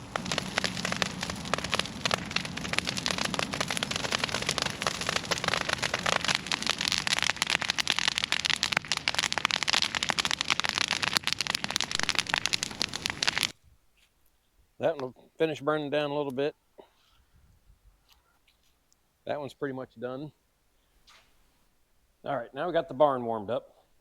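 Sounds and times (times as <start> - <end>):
burning branches crackling and popping: 0.0 - 13.6.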